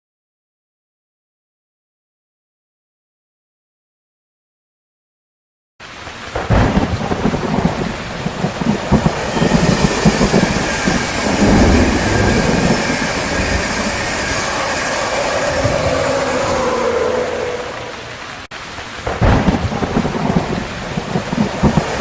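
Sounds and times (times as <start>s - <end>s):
heavy rain hiss: 5.8s - 22.0s
rolling thunder: 6.3s - 22.0s.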